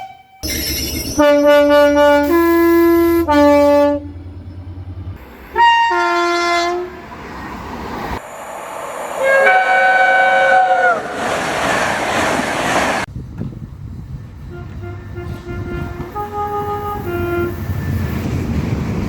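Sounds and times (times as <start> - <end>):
two-tone train horn: 0.0 - 4.2, 5.5 - 7.0, 9.2 - 11.0, 14.5 - 17.8
train rushing past: 0.4 - 19.0
train horn chord: 1.1 - 4.2, 5.5 - 7.0, 9.2 - 11.0, 14.5 - 17.6.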